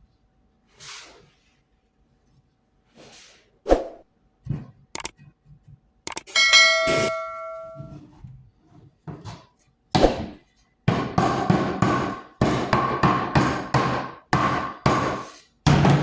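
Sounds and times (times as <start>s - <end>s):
metallic ring: 6.3s - 8.0s
hammer tapping wooden dowels: 10.9s - 16.0s.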